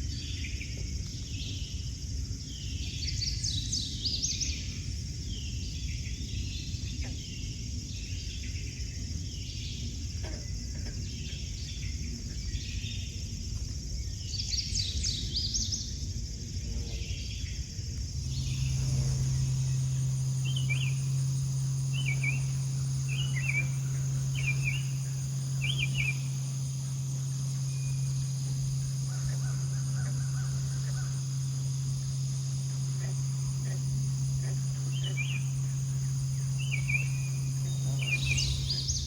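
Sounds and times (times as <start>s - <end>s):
steady low hum: 0.0s - 39.0s
high chirps: 18.2s - 39.0s.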